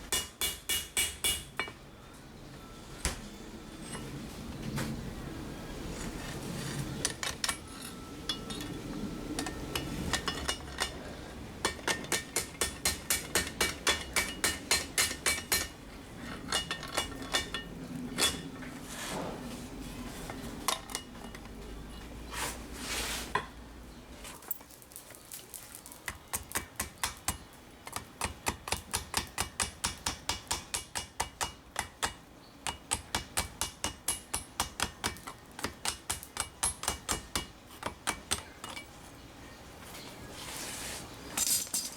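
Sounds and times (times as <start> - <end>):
low steady hum: 0.0 - 22.8
hammer forging on anvil: 0.1 - 1.8, 11.6 - 15.8, 28.0 - 38.9.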